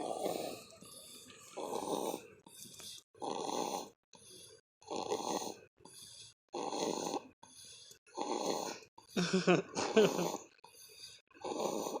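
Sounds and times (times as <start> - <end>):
baby snoring: 0.0 - 2.3, 3.2 - 4.0, 4.8 - 5.7, 6.5 - 7.4, 8.1 - 8.8, 11.4 - 12.0.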